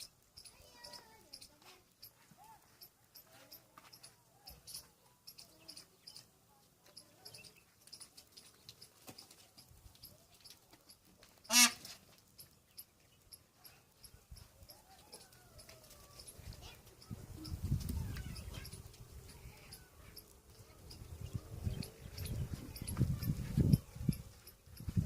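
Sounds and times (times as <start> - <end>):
small chirps: 0.0 - 25.0
peafowl honking call: 11.4 - 12.0.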